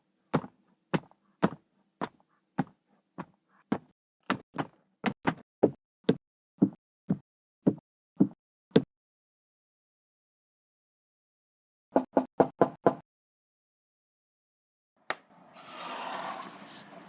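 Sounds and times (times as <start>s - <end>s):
footsteps on hard floor: 0.4s - 8.4s.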